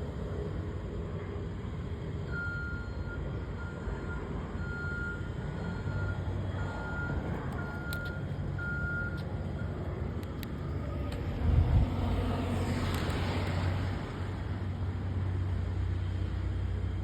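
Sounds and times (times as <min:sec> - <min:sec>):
diesel engine rumbling: 0:00.0 - 0:17.0
reversing alarm beeping: 0:02.3 - 0:09.8.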